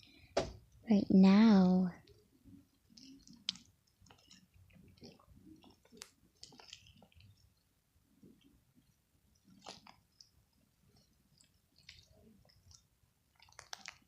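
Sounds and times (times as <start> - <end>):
slime sticky clicks and squelches: 2.9 - 7.5, 11.4 - 14.0.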